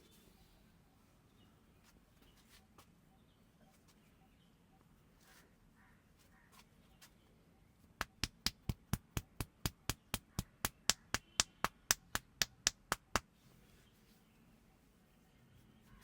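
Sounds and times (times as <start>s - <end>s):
hands slapping a head: 8.0s - 13.3s.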